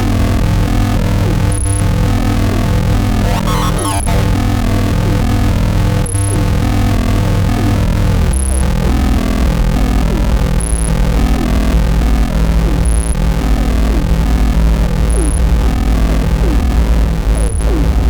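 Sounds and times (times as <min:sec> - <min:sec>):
loud low electronic drone: 0:03.2 - 0:04.6.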